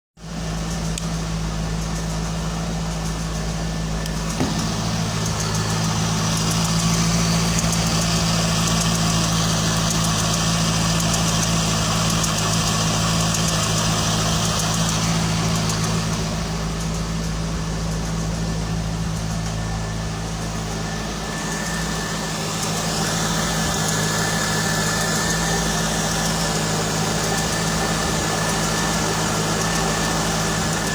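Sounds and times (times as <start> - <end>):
car engine idling: 0.2 - 30.9
engine ticking: 0.5 - 30.9.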